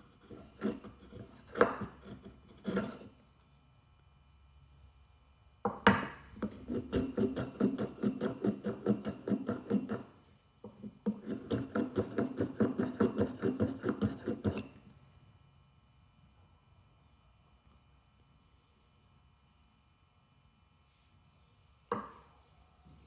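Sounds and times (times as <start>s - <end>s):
hand plane strokes on wood: 0.0s - 3.1s, 6.4s - 10.1s, 11.1s - 14.7s.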